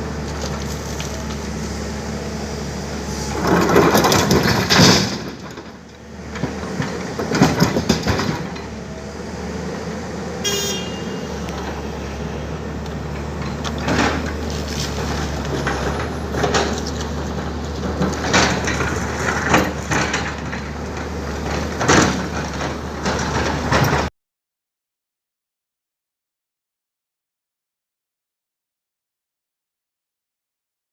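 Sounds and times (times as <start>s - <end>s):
excavator diesel engine running: 0.0s - 24.1s
boulders knocking and clattering: 3.3s - 8.8s, 12.9s - 24.1s.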